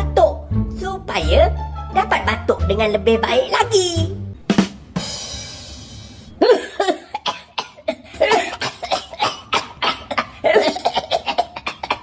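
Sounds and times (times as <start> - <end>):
man coughing: 6.4 - 12.0.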